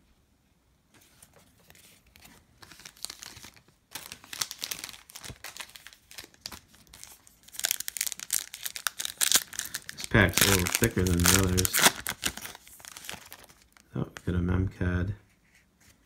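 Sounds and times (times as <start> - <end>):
wrapper being torn and crinkled: 2.6 - 13.9.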